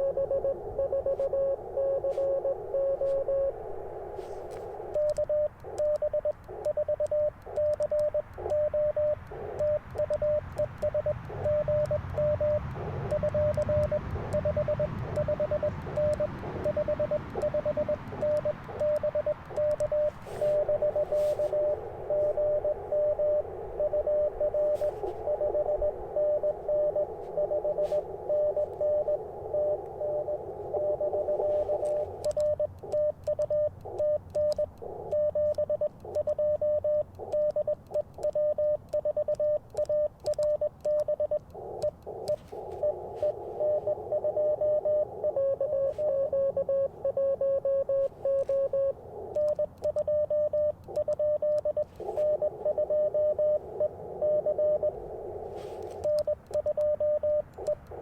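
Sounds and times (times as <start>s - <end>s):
morse code beeps: 0.0s - 58.0s
radio receiver hiss: 0.0s - 58.0s.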